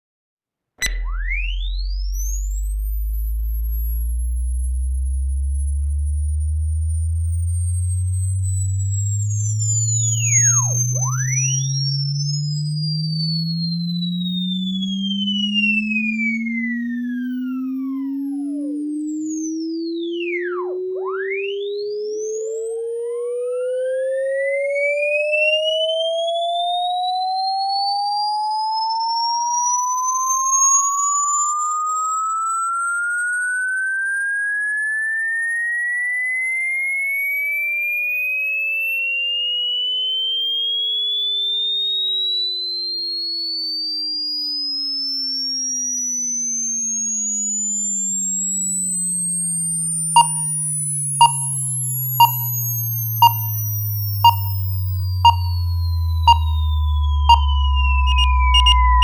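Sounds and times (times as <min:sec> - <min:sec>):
faint falling tone: 0:00.8 - 0:12.1, 0:54.3 - 0:54.6, 0:55.2 - 0:59.0
rising sine tone: 0:00.8 - 0:26.6, 0:48.7 - 0:59.0.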